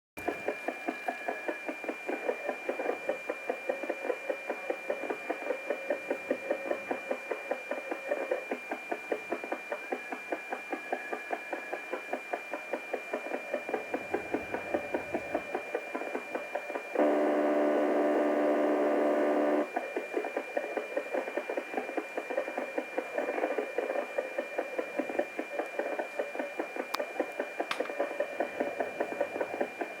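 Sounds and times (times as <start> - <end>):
rapid pulsing radio buzz: 0.2 - 30.0
faint steady whistle: 0.4 - 30.0
steady buzzing tone: 13.6 - 20.9.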